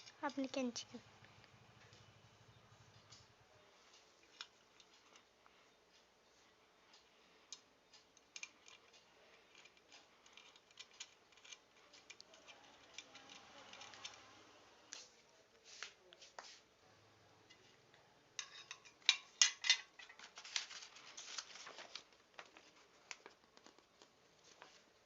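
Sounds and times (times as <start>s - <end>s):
small objects clicking and tapping: 6.9s - 15.0s, 18.4s - 24.2s.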